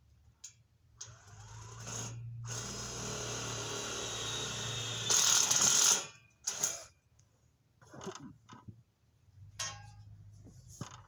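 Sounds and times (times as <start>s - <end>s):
power drill whirring: 1.1s - 6.8s.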